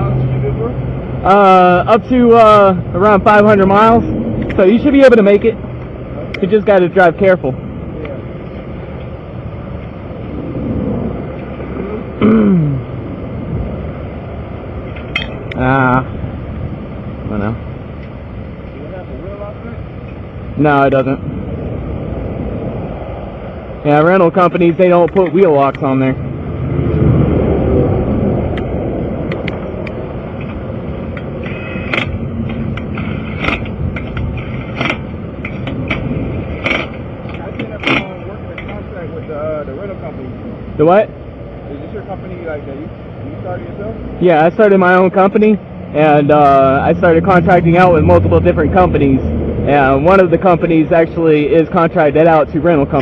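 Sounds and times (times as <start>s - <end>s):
highway traffic rushing past: 0.0s - 53.0s
person making short vocal sound: 12.2s - 12.9s.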